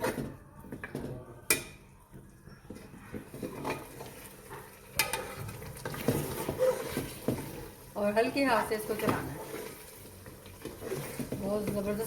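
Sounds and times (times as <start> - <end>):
spoon stirring and scraping pot: 0.0 - 12.0
light sizzle of frying: 2.8 - 12.0.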